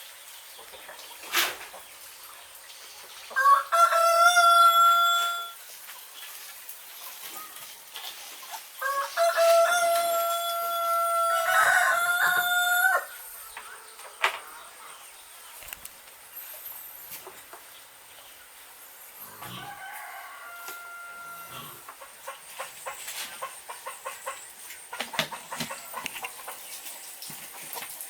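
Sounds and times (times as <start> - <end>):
rooster crowing: 3.4 - 5.6, 8.8 - 13.4, 19.3 - 21.8.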